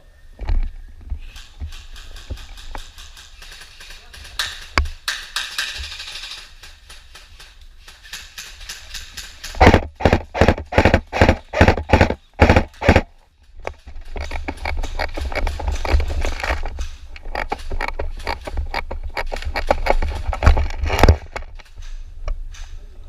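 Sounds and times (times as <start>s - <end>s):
gear rustling: 5.5s - 22.7s.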